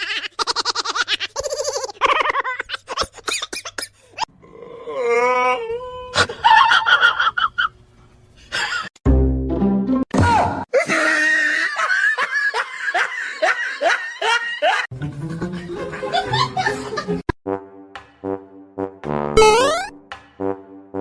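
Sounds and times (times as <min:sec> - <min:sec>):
wailing moaning cries: 0:04.4 - 0:06.2.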